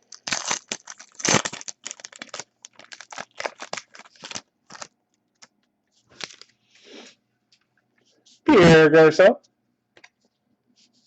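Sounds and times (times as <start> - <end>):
cards clicking and rustling: 0.1 - 6.5.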